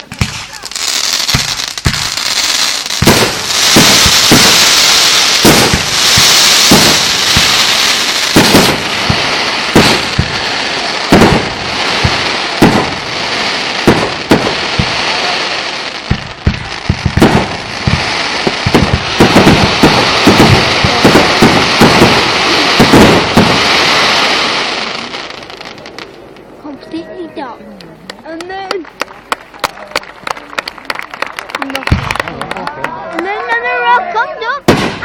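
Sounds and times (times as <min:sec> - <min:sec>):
firework bangs: 0:00.0 - 0:26.6, 0:29.0 - 0:32.4, 0:34.6 - 0:35.0
fireworks crackling hiss: 0:00.0 - 0:26.9.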